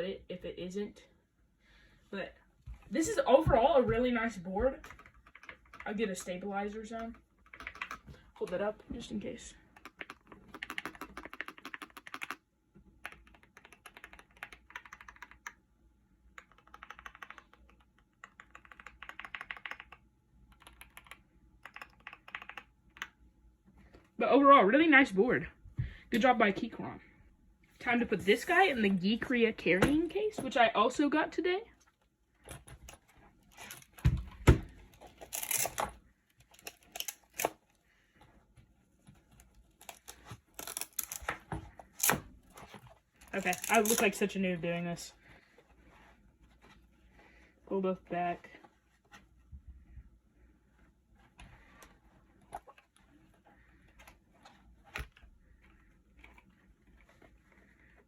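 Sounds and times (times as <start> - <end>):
keyboard handling clicks and knocks: 3.5 - 6.4, 9.7 - 12.4
typing on mechanical keyboard: 4.7 - 8.2, 9.7 - 15.6, 16.3 - 23.2, 43.2 - 44.2.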